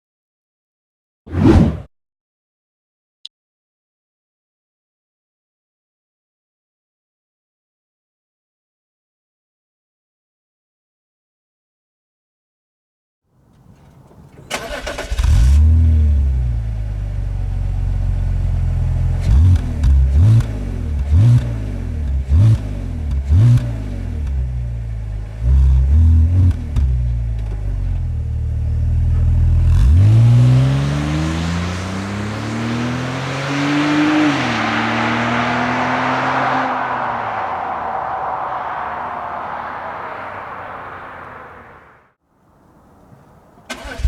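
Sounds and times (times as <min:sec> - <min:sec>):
car engine starting and revving: 0:13.4 - 0:42.1, 0:43.7 - 0:44.0.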